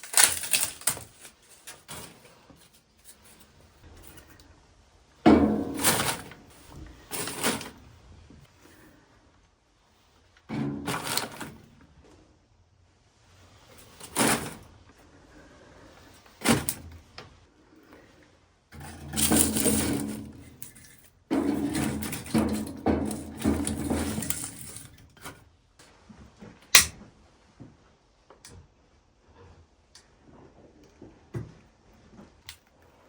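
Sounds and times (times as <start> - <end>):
objects clunking and scraping: 0.0 - 4.5, 5.2 - 9.0, 10.4 - 12.3, 13.4 - 27.9
sharp click: 26.8 - 27.0.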